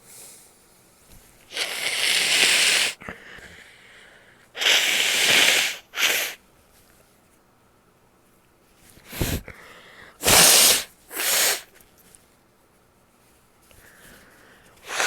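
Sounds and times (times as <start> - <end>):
person blowing air through nose: 1.5 - 3.0, 4.6 - 6.4, 9.1 - 9.5, 10.2 - 11.7.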